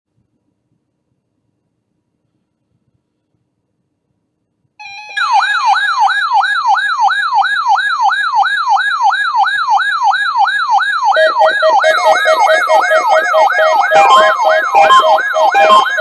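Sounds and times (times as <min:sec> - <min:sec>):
falling siren-like sweep: 0:11.0 - 0:16.0
low rapidly pulsing beep: 0:11.1 - 0:16.0
brief steady tone: 0:11.2 - 0:16.0.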